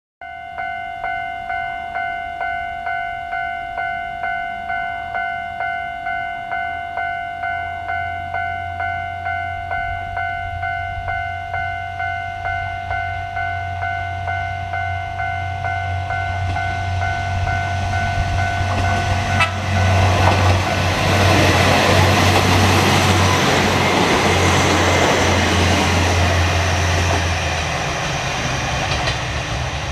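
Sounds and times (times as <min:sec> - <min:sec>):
level crossing alarm dinging: 0:00.2 - 0:26.4
diesel railcar passing: 0:00.6 - 0:29.9
train wheels rumbling on rails: 0:14.8 - 0:29.9.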